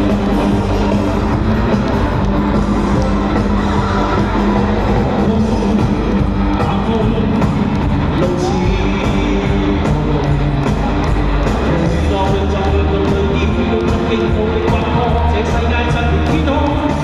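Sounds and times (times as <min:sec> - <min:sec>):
pop rock song with band: 0:00.0 - 0:17.0.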